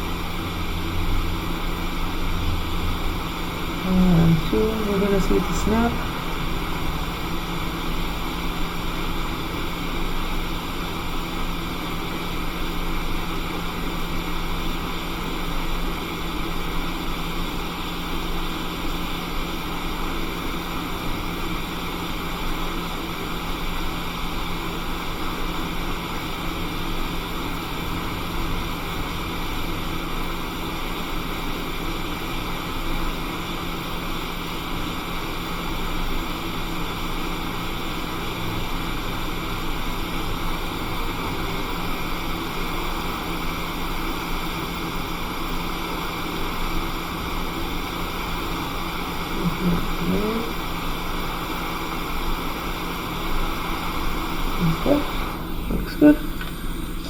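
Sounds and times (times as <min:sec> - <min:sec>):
low steady hum: 0:00.0 - 0:11.2, 0:48.8 - 0:51.1, 0:53.2 - 0:57.0
hot air blower rushing: 0:03.1 - 0:10.8, 0:46.4 - 0:57.0.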